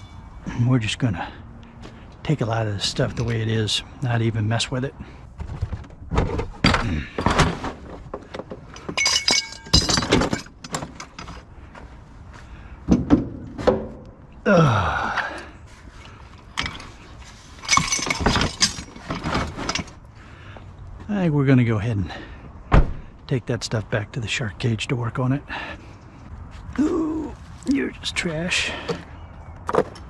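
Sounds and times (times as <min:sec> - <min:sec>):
scrap metal clanking: 0:05.4 - 0:11.5, 0:15.9 - 0:20.0.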